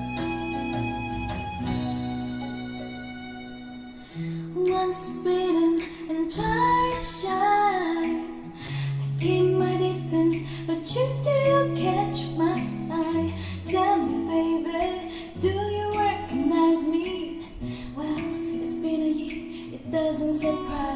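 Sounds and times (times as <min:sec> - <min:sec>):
held bass notes: 0:00.0 - 0:04.1
plucked acoustic guitar: 0:00.0 - 0:20.9
woman singing pop ballad: 0:04.0 - 0:20.9.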